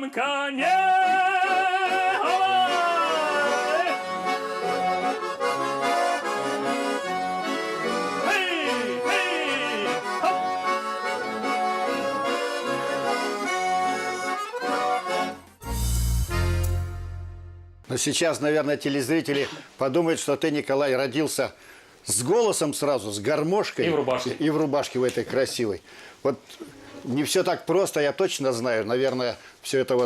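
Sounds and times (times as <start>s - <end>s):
button accordion playing chords: 1.0s - 17.8s.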